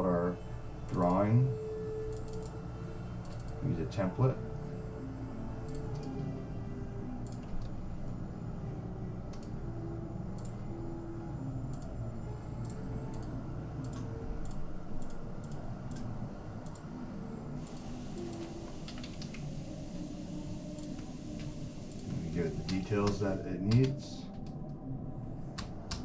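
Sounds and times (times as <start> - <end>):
steady low hum: 0.0 - 26.0
keyboard and mouse clicks: 17.7 - 19.4, 22.7 - 24.6.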